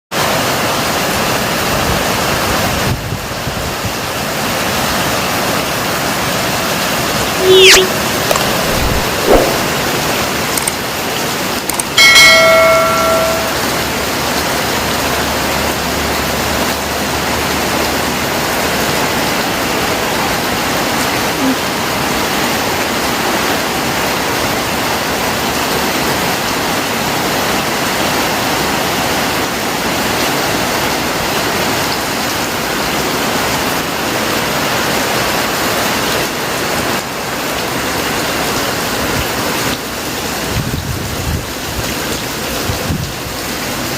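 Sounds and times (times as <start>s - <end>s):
steady rain: 0.2s - 43.9s
bell-like metallic ring: 12.0s - 14.0s.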